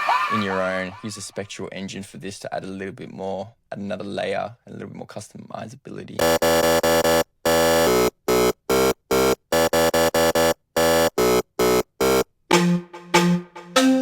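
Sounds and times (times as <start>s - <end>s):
synthesizer chord stabs: 6.2s - 14.0s.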